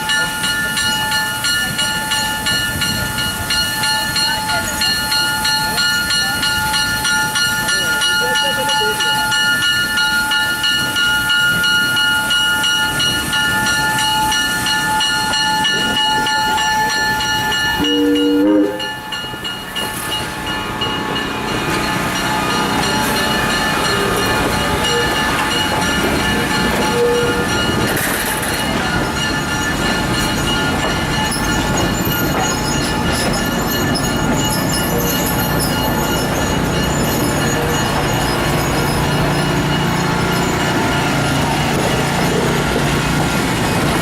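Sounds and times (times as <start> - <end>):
rumble and clatter of train cars: 0.0 - 44.0
high-pitched train squeal: 13.9 - 42.6
low train horn blast: 17.8 - 19.0, 26.8 - 27.5.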